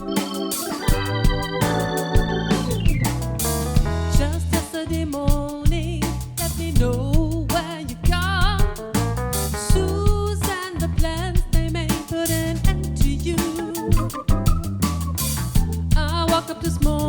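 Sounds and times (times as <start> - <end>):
wavering melody line: 0.0 - 3.8
bass and keyboards: 0.0 - 17.0
drum kit beat: 0.0 - 17.0.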